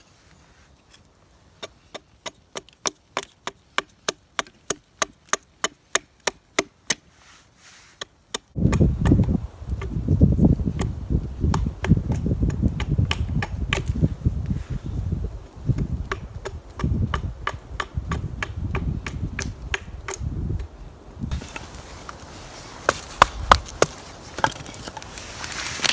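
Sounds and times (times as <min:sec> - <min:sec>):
wood being chopped: 0:01.6 - 0:07.0, 0:08.0 - 0:14.1, 0:15.7 - 0:20.7, 0:22.8 - 0:25.0.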